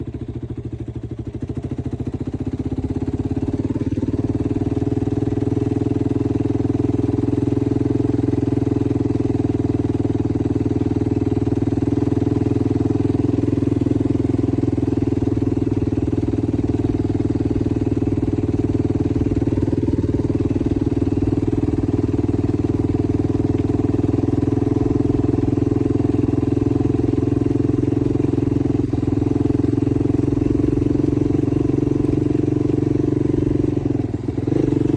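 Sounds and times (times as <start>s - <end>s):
quad engine running: 0.0s - 34.9s.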